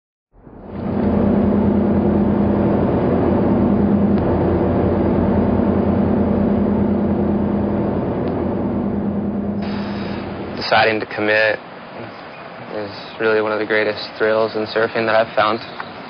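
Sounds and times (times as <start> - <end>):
low hum: 0.3 - 13.8
engine drone: 0.3 - 16.0.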